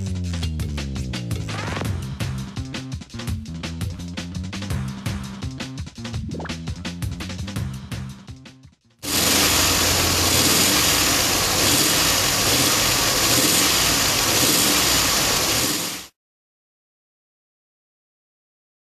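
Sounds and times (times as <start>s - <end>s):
car engine running: 9.0s - 16.1s.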